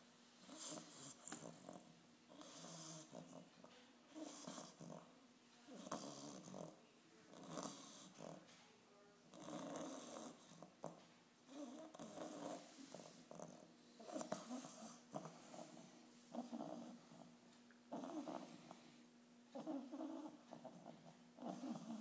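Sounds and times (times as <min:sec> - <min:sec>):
puppy snoring faintly: 0:00.4 - 0:08.6, 0:09.2 - 0:22.0.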